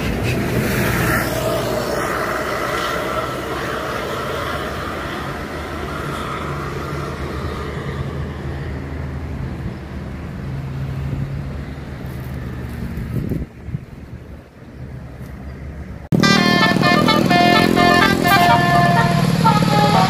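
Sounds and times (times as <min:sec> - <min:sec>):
heavy vehicle engine running: 0:00.0 - 0:10.6, 0:16.0 - 0:20.0
tyre and road noise: 0:00.0 - 0:20.0.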